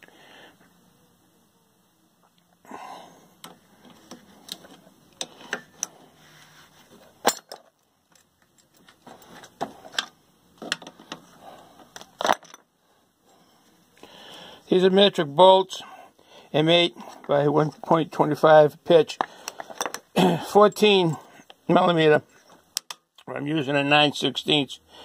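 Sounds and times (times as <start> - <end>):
metal bolts and wrench clinking: 7.2 - 10.1, 19.1 - 21.3.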